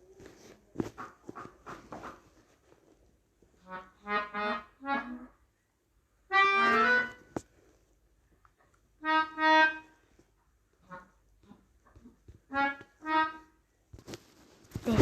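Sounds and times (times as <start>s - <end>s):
melodica notes: 3.6s - 5.4s, 6.3s - 7.3s, 9.0s - 10.0s, 12.5s - 13.6s.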